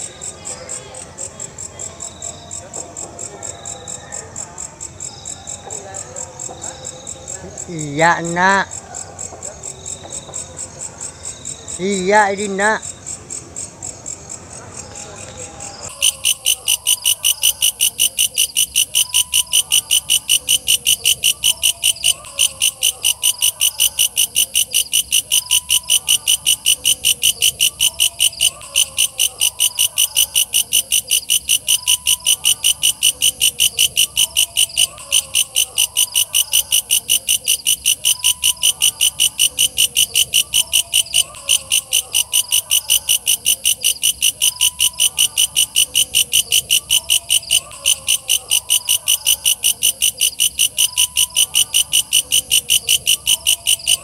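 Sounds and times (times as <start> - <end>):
katydid calling in shrill pulses: 15.9 - 54.0.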